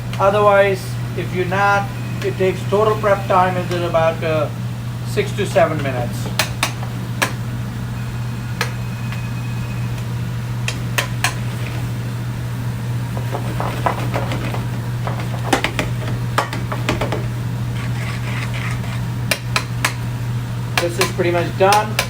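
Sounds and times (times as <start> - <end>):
low hum: 0.0 - 20.8
metal utensil scraping a pan: 17.7 - 19.2.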